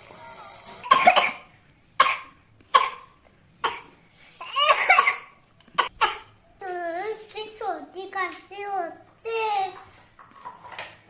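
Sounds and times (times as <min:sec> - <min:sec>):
young child coughing: 0:00.8 - 0:06.4.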